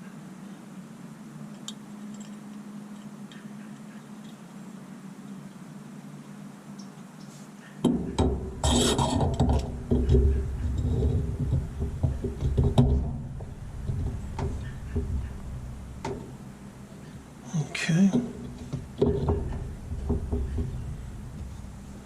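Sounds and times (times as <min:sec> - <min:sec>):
light clicks and knocks: 0:06.8 - 0:17.4, 0:18.0 - 0:22.0
washing machine parts scraping: 0:07.8 - 0:17.4, 0:18.1 - 0:22.0.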